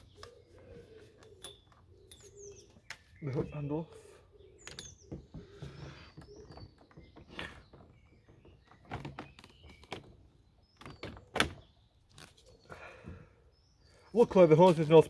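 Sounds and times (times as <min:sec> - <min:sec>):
plastic vacuum parts clicking and knocking: 0:04.6 - 0:12.4.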